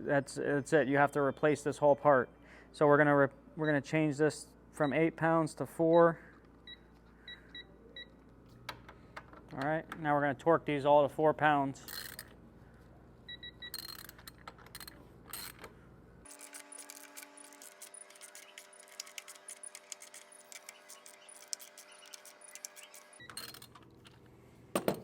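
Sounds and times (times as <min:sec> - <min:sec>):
ratcheting wrench clicks: 0:11.9 - 0:12.3, 0:13.6 - 0:15.7, 0:16.3 - 0:23.8.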